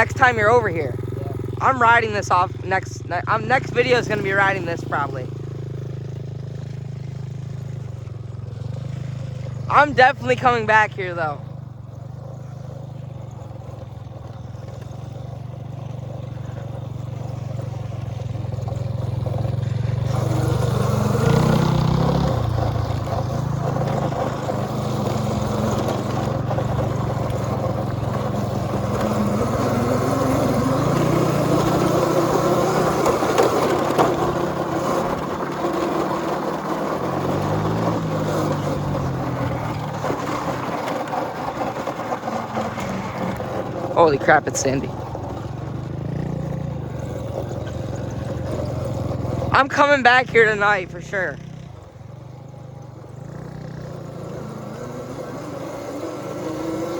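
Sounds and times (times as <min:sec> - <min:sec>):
small motorbike engine revving: 0:00.0 - 0:02.6, 0:03.2 - 0:56.9
wind and tyre rushing: 0:11.4 - 0:50.6, 0:51.4 - 0:56.9.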